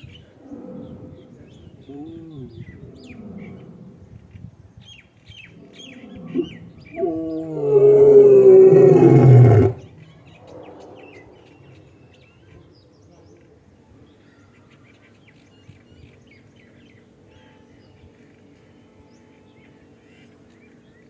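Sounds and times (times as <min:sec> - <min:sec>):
birds chirping: 0:00.0 - 0:21.0
lion roaring: 0:00.3 - 0:04.1, 0:05.5 - 0:10.0
lion grunting: 0:00.4 - 0:04.0, 0:05.6 - 0:09.9.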